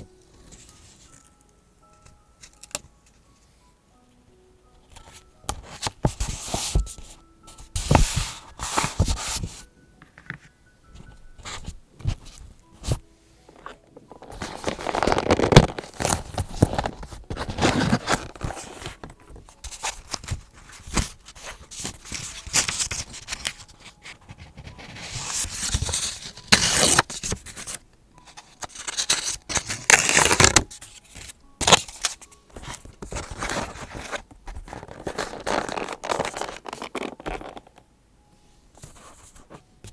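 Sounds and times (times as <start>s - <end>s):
paper rustling and crinkling: 5.0s - 9.6s, 11.4s - 37.8s.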